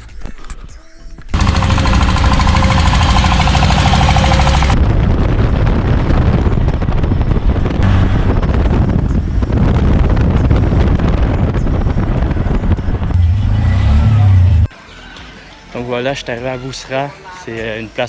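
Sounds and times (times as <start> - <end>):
small engine with rattling pulse: 1.4 - 4.8
wind buffeting microphone: 1.4 - 14.7.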